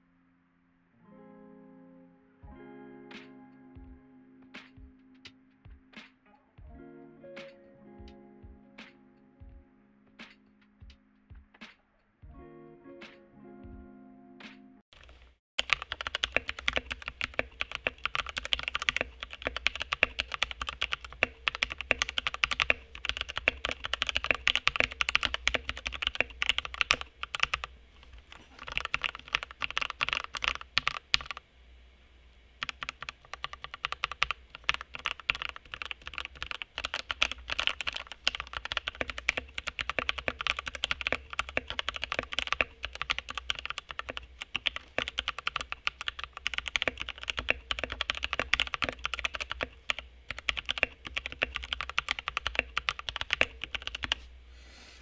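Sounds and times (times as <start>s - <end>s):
fast typing on mechanical keyboard: 15.0s - 31.4s, 32.6s - 54.2s.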